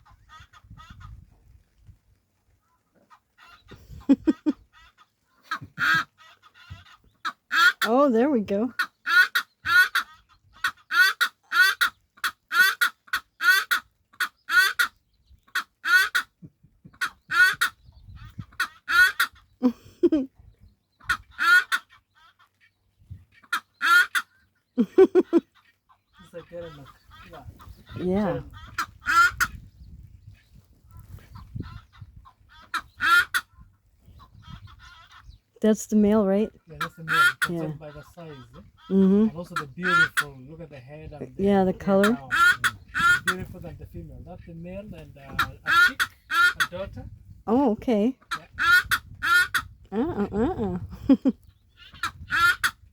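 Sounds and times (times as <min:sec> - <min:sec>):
game bird clucking: 0:03.1 - 0:07.9, 0:08.7 - 0:14.9, 0:15.5 - 0:20.2, 0:21.0 - 0:21.9, 0:23.4 - 0:29.6, 0:31.3 - 0:33.5, 0:36.8 - 0:40.4, 0:41.7 - 0:43.5, 0:45.2 - 0:46.8, 0:48.2 - 0:52.8.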